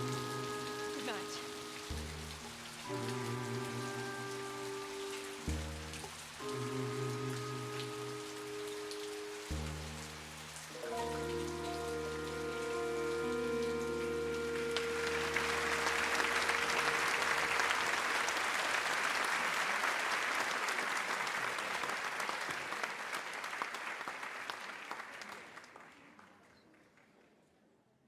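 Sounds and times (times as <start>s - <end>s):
audience applauding: 0.0s - 1.9s, 10.7s - 27.2s
held chord of a song: 0.0s - 10.2s, 10.8s - 18.4s.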